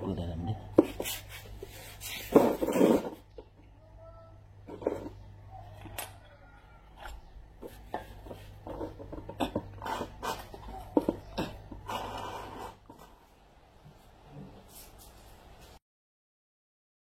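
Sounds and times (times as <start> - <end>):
metal rasping scrape: 7.9 - 13.1.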